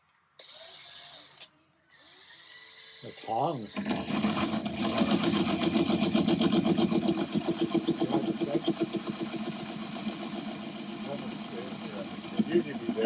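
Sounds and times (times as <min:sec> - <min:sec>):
electric drill running: 0:03.8 - 0:13.0.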